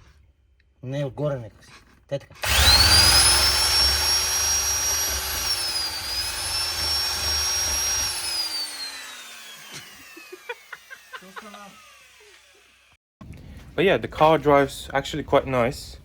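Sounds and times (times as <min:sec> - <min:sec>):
electric power tool whining: 0:02.4 - 0:13.0.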